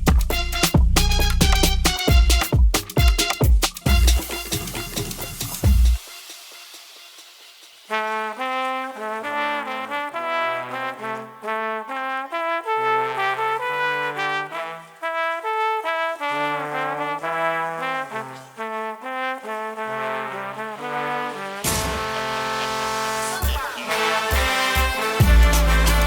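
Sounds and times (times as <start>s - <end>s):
brass section playing held chords: 0.2s - 7.1s, 7.8s - 26.0s.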